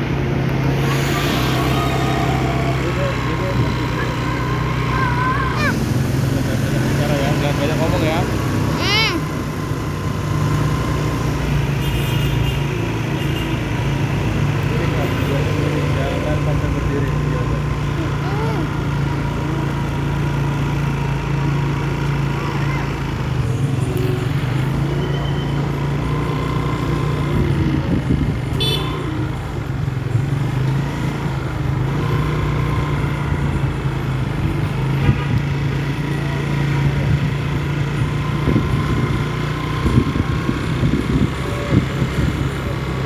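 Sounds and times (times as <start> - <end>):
vehicle engines droning: 0.0 - 43.0
horn toots: 0.8 - 5.3, 28.6 - 29.0.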